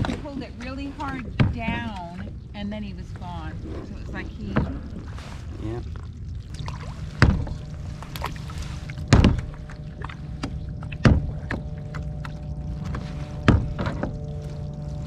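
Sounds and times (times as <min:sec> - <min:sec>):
steady low hum: 0:00.0 - 0:15.0
gear knocking on kayak hull: 0:09.0 - 0:14.2.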